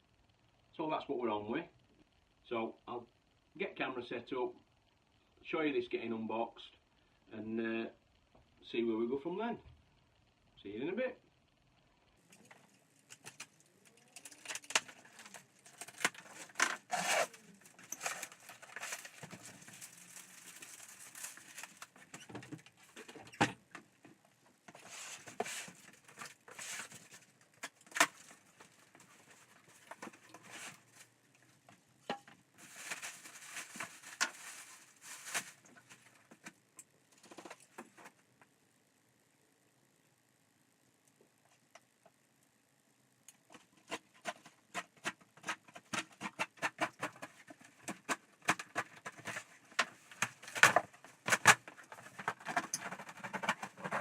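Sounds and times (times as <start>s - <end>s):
packaging rustling and tearing: 13.0s - 23.1s, 24.7s - 31.1s, 32.6s - 36.5s, 43.5s - 54.0s.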